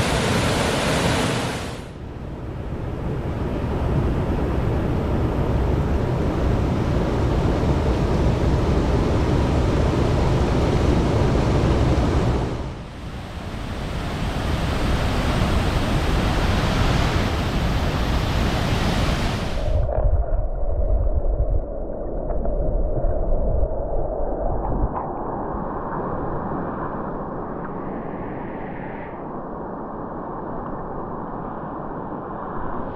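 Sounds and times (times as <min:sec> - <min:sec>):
creek water rushing: 0:00.0 - 0:01.9.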